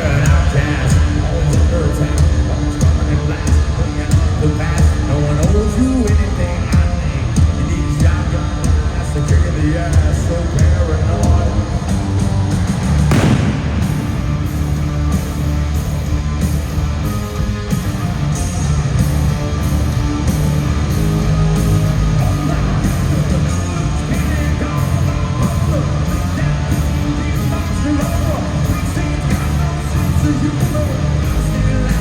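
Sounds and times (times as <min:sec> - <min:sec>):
lead vocal singing: 0:00.0 - 0:11.7
hard rock band playing live: 0:00.0 - 0:32.0.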